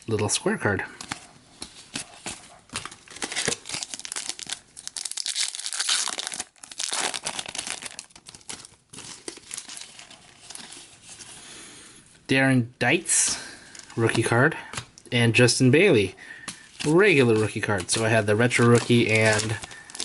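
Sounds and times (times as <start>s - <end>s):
wrapper tearing and crinkling: 2.8s - 10.9s, 16.5s - 20.0s.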